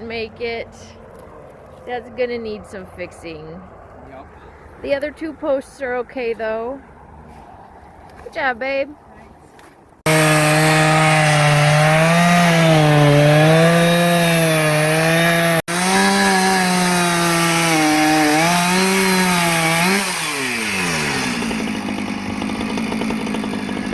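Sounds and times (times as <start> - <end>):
chainsaw cutting wood: 10.1 - 23.9.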